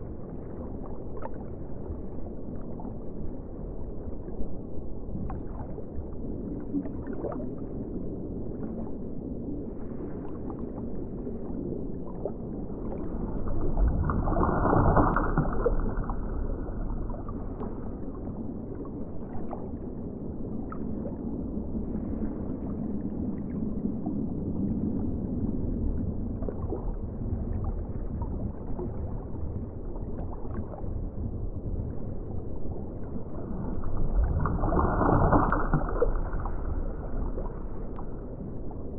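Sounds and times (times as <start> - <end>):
muffled underwater water rush: 0.0 - 38.9
underwater bubbling and crackling: 0.0 - 38.9.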